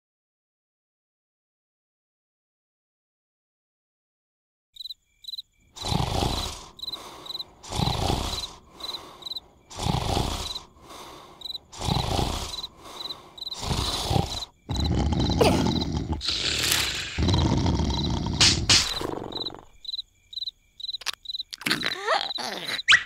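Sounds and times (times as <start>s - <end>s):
crickets chirping: 4.8s - 23.0s
cartoon snoring: 5.8s - 19.8s, 21.6s - 23.0s.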